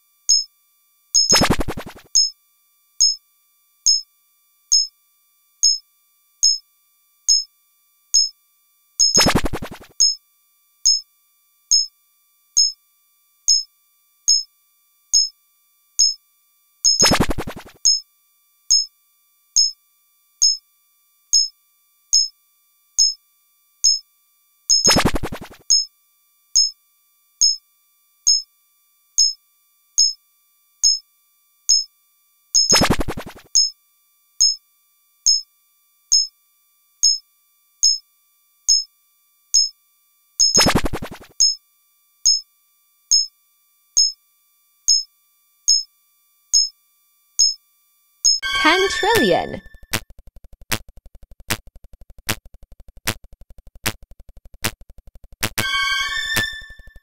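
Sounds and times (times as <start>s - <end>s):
short high synth beep: 48.4s - 49.6s.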